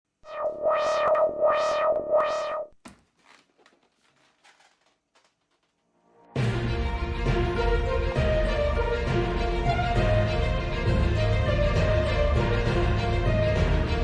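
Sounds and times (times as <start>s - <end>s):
held synth note: 0.2s - 2.7s
synthesizer music: 0.2s - 2.7s, 6.4s - 14.0s.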